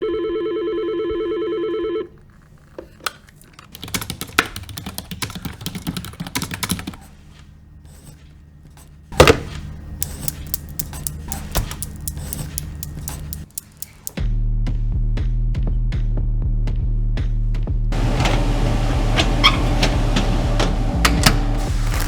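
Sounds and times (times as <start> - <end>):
electronic telephone ring: 0.0 - 2.2
computer keyboard typing: 3.4 - 7.0, 10.0 - 14.2
quick clicking: 10.0 - 14.2.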